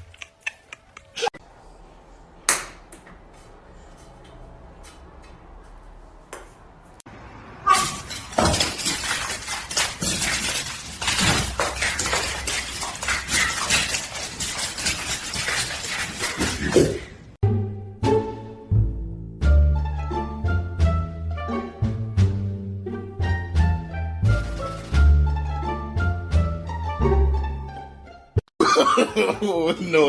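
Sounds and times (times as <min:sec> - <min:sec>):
hard objects clattering: 0:07.8 - 0:17.2.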